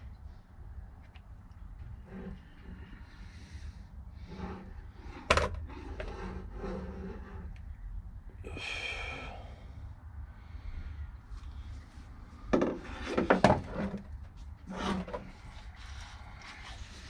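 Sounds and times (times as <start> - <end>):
scrape with faint squeal: 1.8 - 7.6, 11.4 - 17.0.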